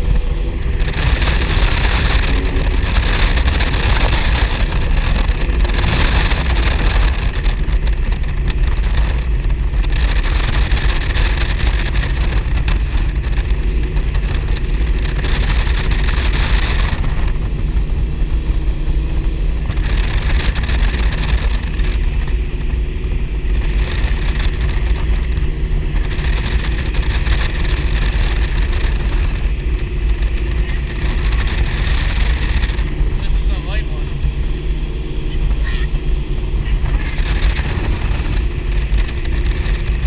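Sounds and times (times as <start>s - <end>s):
powerboat engines running: 0.0s - 40.0s.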